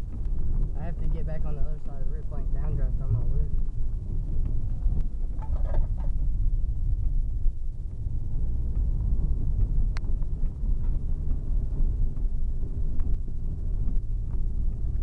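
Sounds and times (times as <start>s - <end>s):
car moving through storm winds: 0.0s - 15.0s
light ticks: 9.6s - 11.4s, 12.1s - 13.2s.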